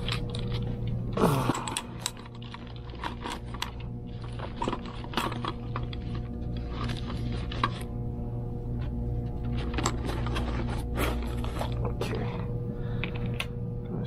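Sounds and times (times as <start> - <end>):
steady low hum: 0.0 - 14.0
small plastic parts clicking: 1.4 - 6.2.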